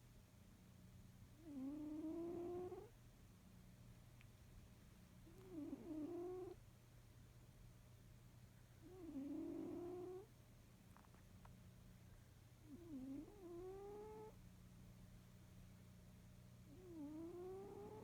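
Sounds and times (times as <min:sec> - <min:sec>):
cats snoring softly: 0:01.3 - 0:03.0, 0:05.2 - 0:06.7, 0:08.7 - 0:11.2, 0:12.6 - 0:14.4, 0:16.6 - 0:18.0.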